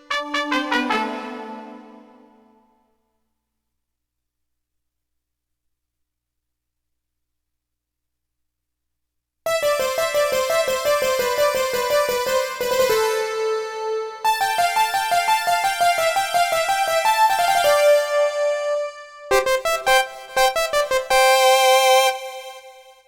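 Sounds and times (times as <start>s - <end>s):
synthesizer electric piano melody: 0.0s - 2.8s, 9.5s - 22.8s.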